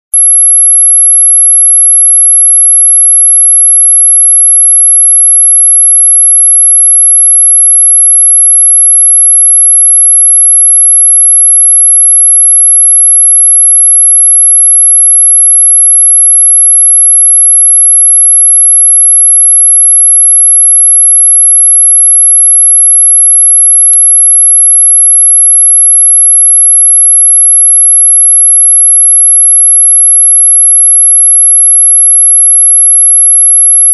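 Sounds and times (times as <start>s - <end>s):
high-pitched electronic sine tone: 0.0s - 33.9s.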